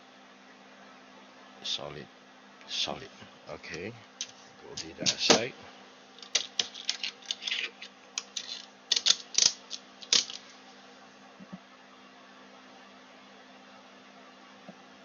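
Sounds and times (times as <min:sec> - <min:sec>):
small hand tools clicking: 0:08.2 - 0:10.4.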